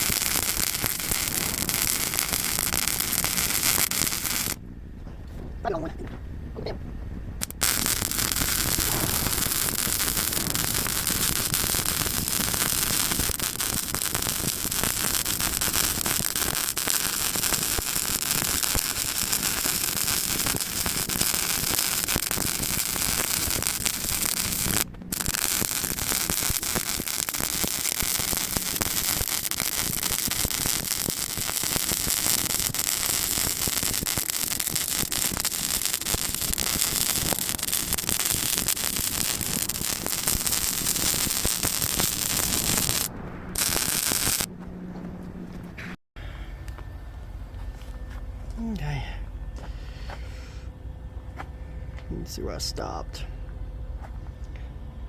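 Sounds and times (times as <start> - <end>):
welder arc crackling: 0.0 - 4.6, 7.4 - 44.5.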